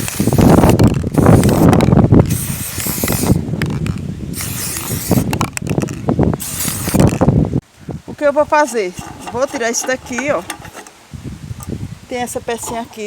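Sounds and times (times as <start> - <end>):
spray paint hissing: 0.0 - 3.4, 4.3 - 5.5, 6.4 - 7.3
loud rough rustling: 0.0 - 7.6.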